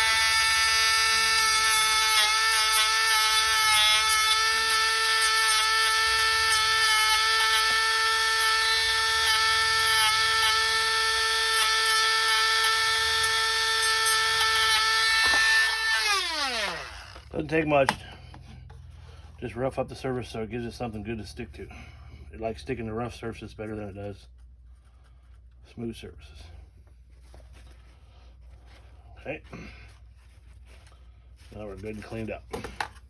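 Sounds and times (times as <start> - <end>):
rotary tool high whine: 0.0 - 17.4.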